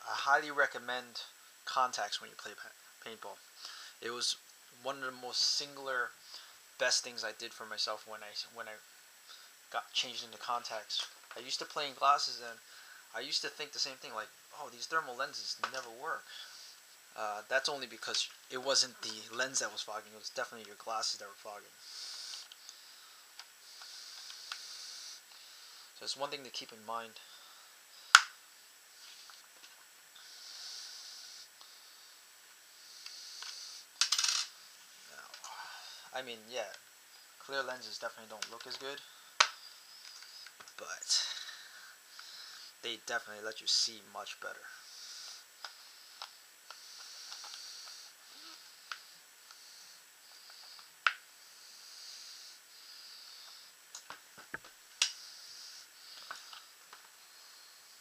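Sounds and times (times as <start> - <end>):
soft hissing: 0.0 - 58.0
small ticks: 21.9 - 25.5, 33.0 - 34.4, 39.4 - 40.8, 45.0 - 51.3, 53.0 - 54.2.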